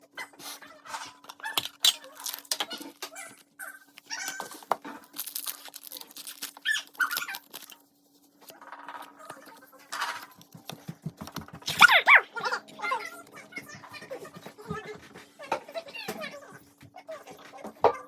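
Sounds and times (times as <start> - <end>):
foil wrapper crinkling and tearing: 1.1 - 10.5.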